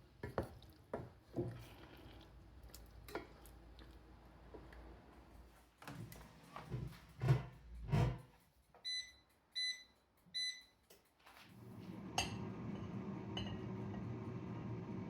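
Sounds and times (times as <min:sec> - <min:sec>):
air fryer fan humming: 0:11.6 - 0:15.0.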